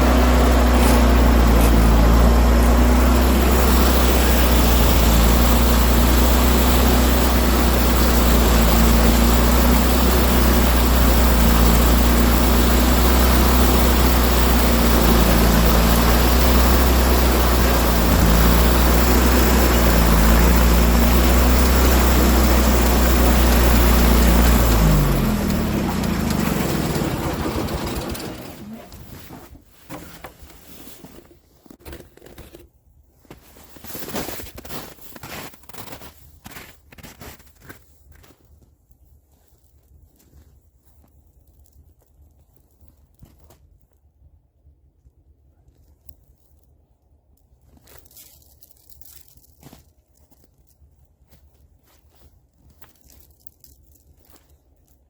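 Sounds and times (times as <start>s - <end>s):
engine running and winding down: 0.0s - 29.4s.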